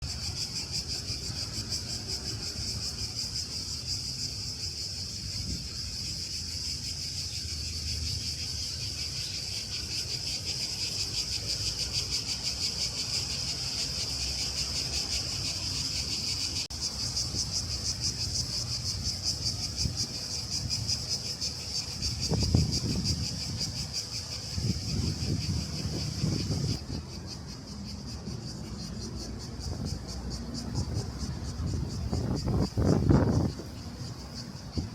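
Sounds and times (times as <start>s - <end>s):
cicadas buzzing: 0.0s - 34.9s.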